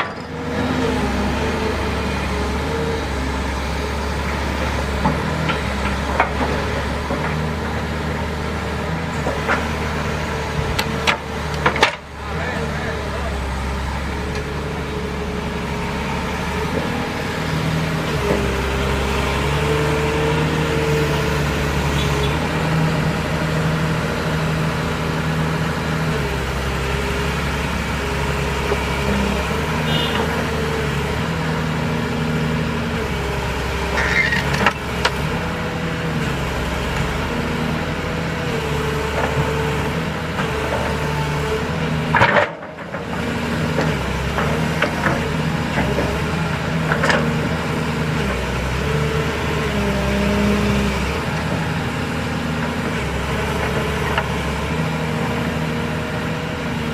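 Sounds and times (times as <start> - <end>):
excavator diesel engine running: 0.0 - 56.9.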